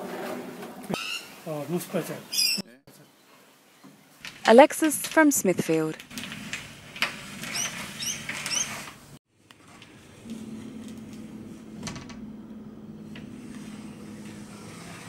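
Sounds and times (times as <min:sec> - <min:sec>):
door squeaks: 0:01.0 - 0:01.3, 0:02.3 - 0:02.8, 0:06.0 - 0:09.0
sliding door rattling on track: 0:06.0 - 0:15.0
low hum: 0:09.5 - 0:15.0.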